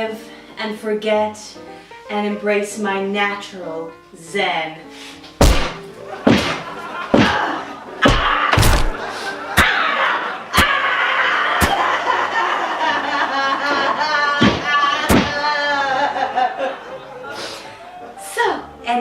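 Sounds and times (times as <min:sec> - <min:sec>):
heavy blows smashing bones: 0:05.4 - 0:09.0, 0:11.6 - 0:11.8, 0:14.4 - 0:15.4.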